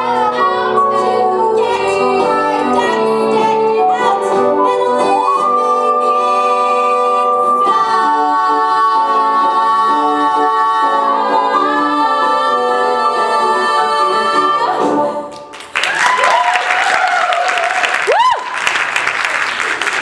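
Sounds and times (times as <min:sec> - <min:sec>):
audience applause: 0:15.5 - 0:20.0.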